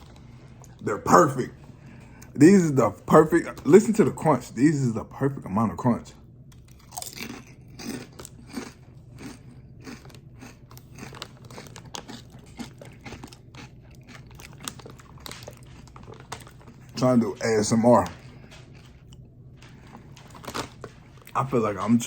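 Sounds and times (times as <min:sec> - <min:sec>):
crunching of tortilla chip: 0:06.5 - 0:21.5.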